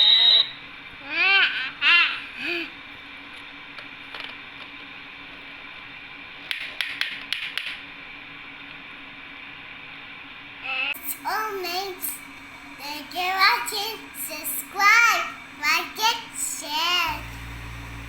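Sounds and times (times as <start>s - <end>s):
plastic toy clicking: 6.5s - 7.8s
faint electronic hum: 7.8s - 18.0s.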